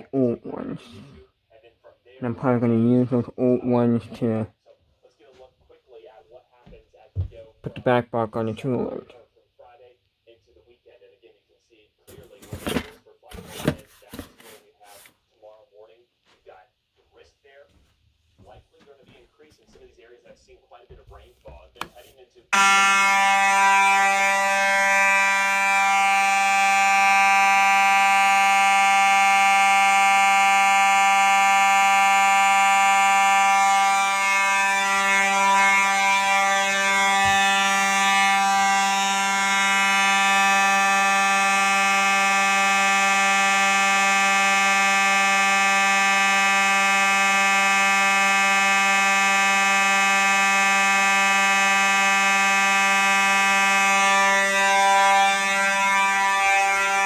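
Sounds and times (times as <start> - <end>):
fire alarm buzzing: 12.1 - 14.6, 22.5 - 57.0.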